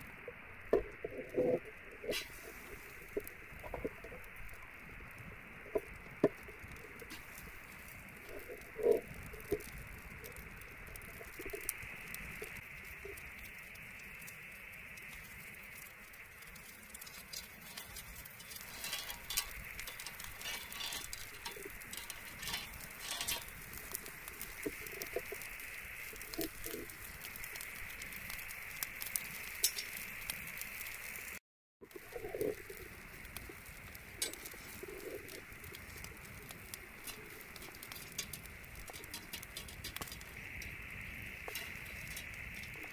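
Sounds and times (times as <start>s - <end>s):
bonfire crackling and popping: 0.0s - 42.9s
dove cooing: 0.8s - 2.9s, 8.2s - 10.4s.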